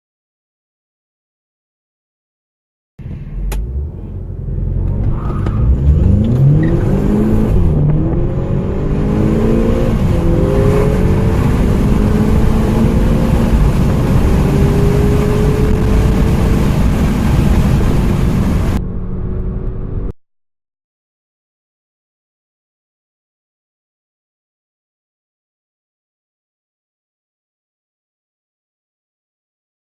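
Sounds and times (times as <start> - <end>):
car engine accelerating: 3.0 - 20.1
second engine revving: 3.0 - 20.1.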